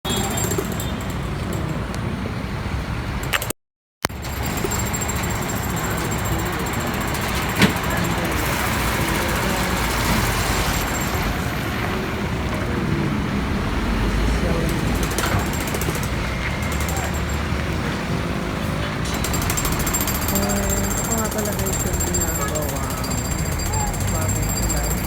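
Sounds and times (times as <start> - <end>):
road traffic rumble: 0.1 - 25.0
sharp click: 3.3 - 3.6.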